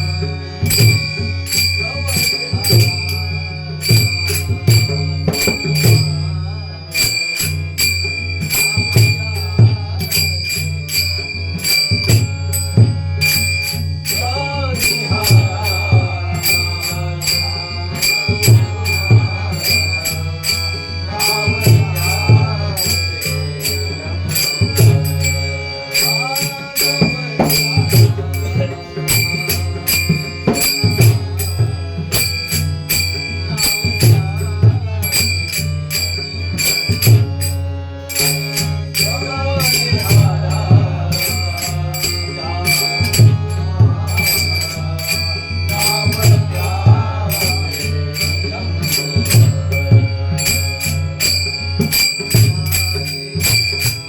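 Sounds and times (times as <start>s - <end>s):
hand cymbals struck: 0.0s - 54.0s
person singing: 14.0s - 32.4s, 38.1s - 53.5s.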